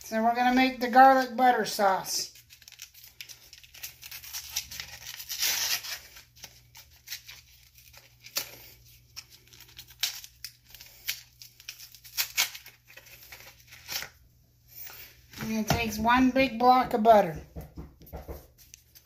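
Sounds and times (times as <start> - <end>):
wrapper crinkling and tearing: 2.2 - 14.2.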